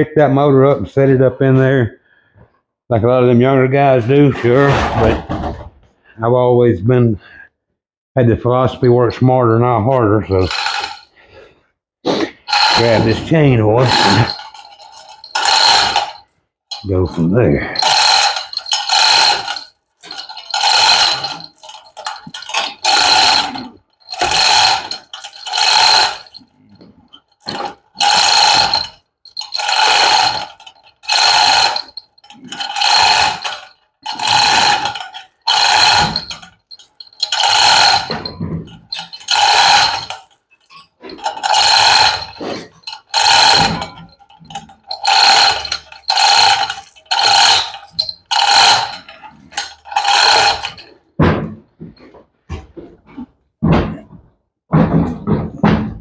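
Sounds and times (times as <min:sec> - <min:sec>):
chain rattling through hoist: 0:10.2 - 0:11.2, 0:12.2 - 0:52.2.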